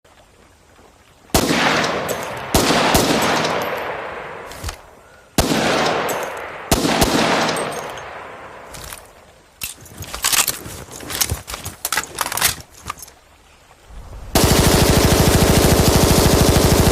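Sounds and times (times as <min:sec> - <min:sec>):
gunshot echo: 0:01.4 - 0:04.6, 0:05.4 - 0:08.6
submachine gun single shots: 0:01.4 - 0:04.8, 0:05.4 - 0:08.1
automatic gunfire burst: 0:14.3 - 0:16.9.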